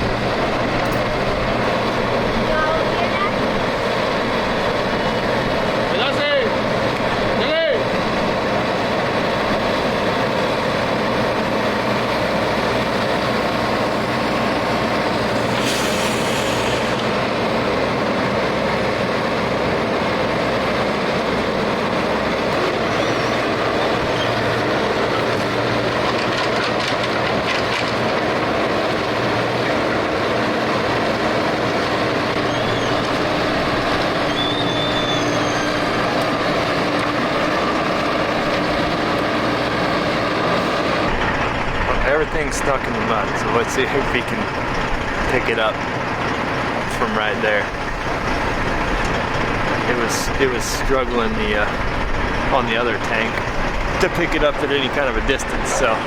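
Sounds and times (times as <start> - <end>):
construction machine engine hum: 0.0 - 56.0
short hiss: 15.4 - 17.1.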